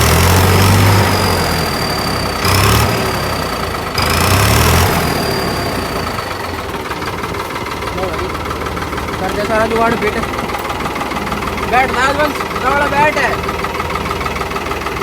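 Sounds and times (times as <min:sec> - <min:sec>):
tractor engine revving: 0:00.0 - 0:15.0.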